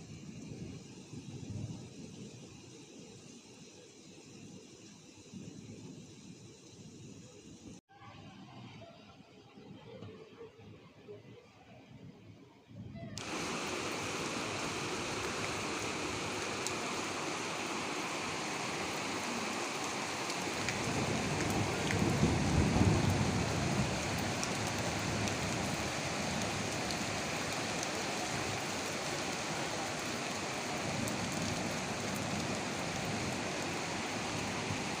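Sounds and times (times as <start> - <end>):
heavy rain hissing: 0.0 - 7.8, 13.2 - 35.0
raindrop ticks: 20.2 - 28.1.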